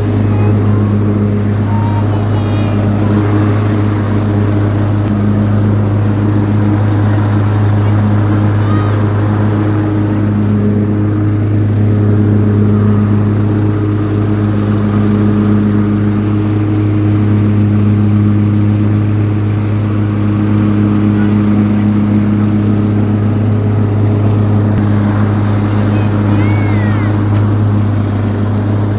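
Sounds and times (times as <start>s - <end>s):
riding lawn mower engine running: 0.0s - 28.9s.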